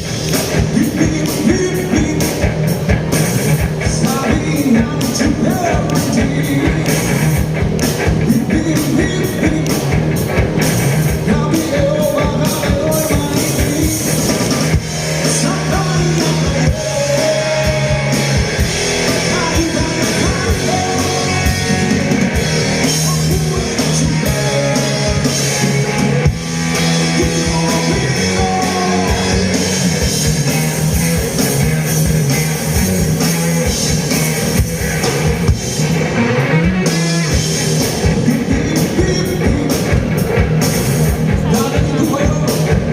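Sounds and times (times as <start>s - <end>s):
drum kit: 0.0s - 42.9s
electric guitar: 0.0s - 42.9s
person singing: 0.6s - 2.4s, 3.8s - 7.1s, 8.2s - 10.0s, 11.2s - 14.2s, 15.2s - 18.4s, 19.1s - 22.0s, 22.8s - 26.2s, 26.9s - 29.6s, 38.1s - 40.1s.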